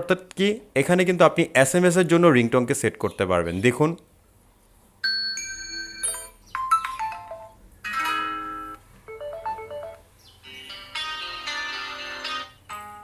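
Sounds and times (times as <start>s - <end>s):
short melodic alert tones: 8.1s - 10.9s.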